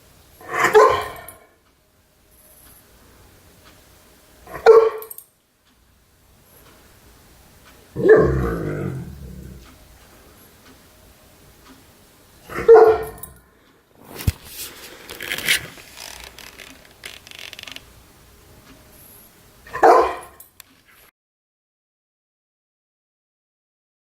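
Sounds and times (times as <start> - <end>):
dog making throaty vocal sounds: 8.0 - 9.6
rustling: 14.0 - 17.9.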